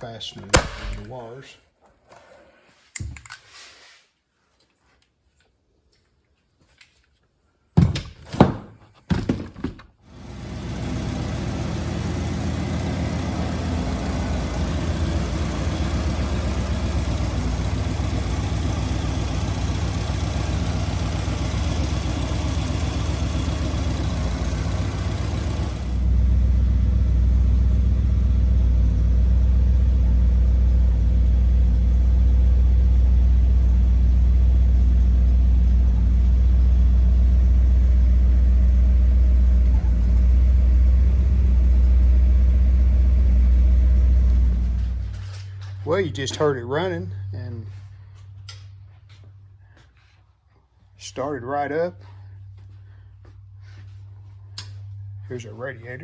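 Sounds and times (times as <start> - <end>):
engine cranking and running: 10.1 - 46.3.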